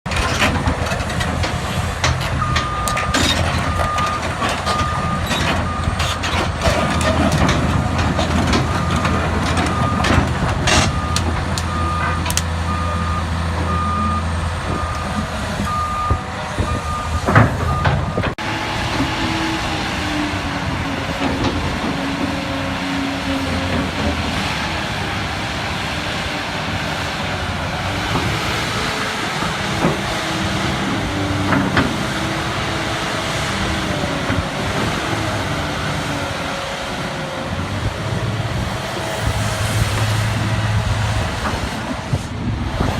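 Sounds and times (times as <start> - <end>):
knocks and clanks: 0.1 - 12.5, 17.2 - 18.4
excavator diesel engine running: 0.1 - 42.9.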